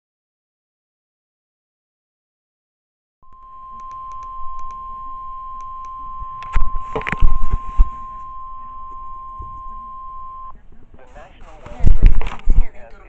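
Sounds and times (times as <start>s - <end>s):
steady high alarm beep: 3.2s - 10.5s
scattered clicks: 3.3s - 10.5s, 11.8s - 13.0s.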